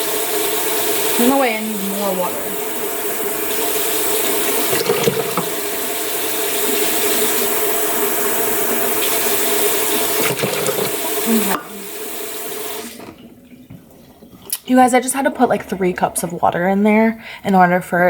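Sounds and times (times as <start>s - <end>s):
tap water filling a container: 0.0s - 16.7s.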